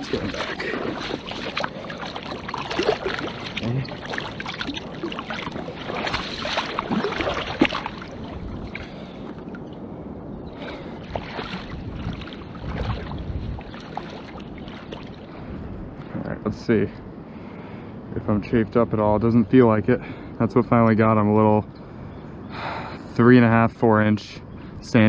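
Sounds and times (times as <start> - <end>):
water splashing and sloshing: 0.0 - 16.1.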